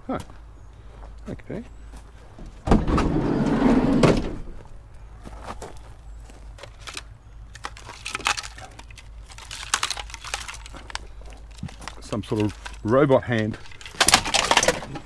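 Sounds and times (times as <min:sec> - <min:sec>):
junk scraping rattle: 0:02.0 - 0:05.6, 0:07.5 - 0:15.0
knocks and clicks of junk: 0:02.2 - 0:04.9, 0:07.6 - 0:15.0.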